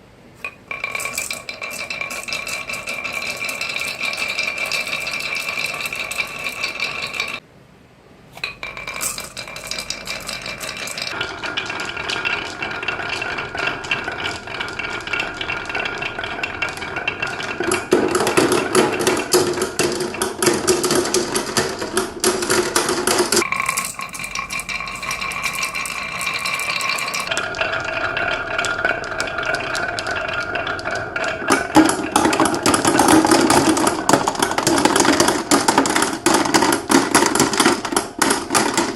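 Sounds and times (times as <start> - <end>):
marbles clattering down marble run: 0.5 - 7.4, 8.4 - 38.9.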